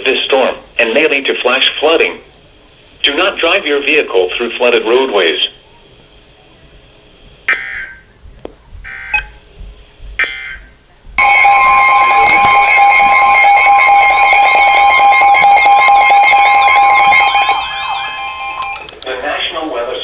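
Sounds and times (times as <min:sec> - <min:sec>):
warbling alarm: 0:07.5 - 0:08.1, 0:08.8 - 0:09.4, 0:10.2 - 0:19.0
buzzy data bursts: 0:10.2 - 0:19.7
steady alert tone: 0:11.2 - 0:18.9.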